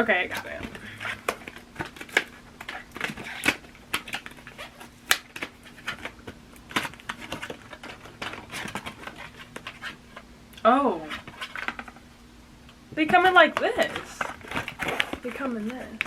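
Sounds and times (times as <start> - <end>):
packaging snaps: 0.3 - 9.9
package being unwrapped by hand: 0.4 - 10.2, 13.6 - 16.0.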